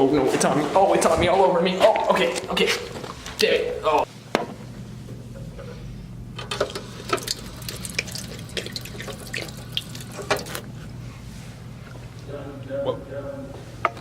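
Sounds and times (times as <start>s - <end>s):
water running from sink tap: 6.6s - 10.6s.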